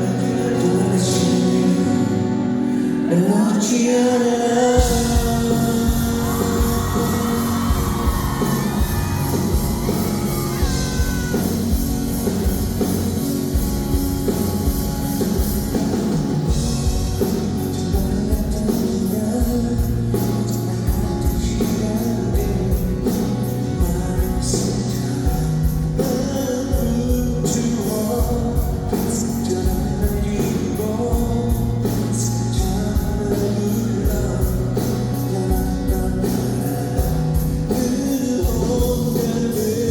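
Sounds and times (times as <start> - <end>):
person singing: 0.0 - 13.0, 16.8 - 39.9
live rock band music: 0.0 - 39.9
drum beat: 4.8 - 17.2.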